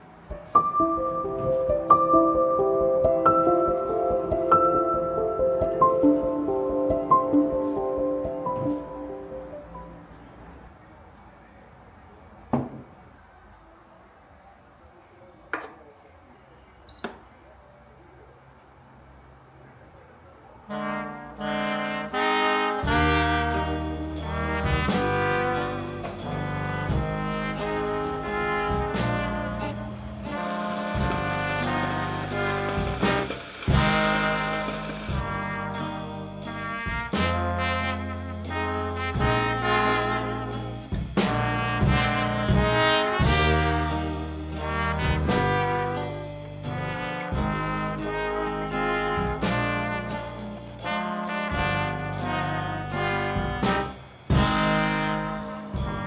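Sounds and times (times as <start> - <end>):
brass horn chords: 0.0 - 10.8, 20.7 - 56.0
bass line: 0.4 - 10.0, 22.8 - 50.8, 51.5 - 56.0.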